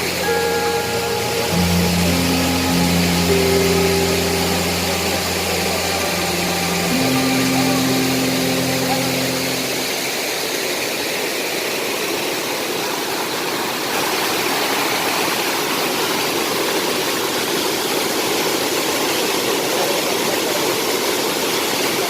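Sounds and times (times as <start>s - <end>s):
waterfall roaring: 0.0s - 22.0s.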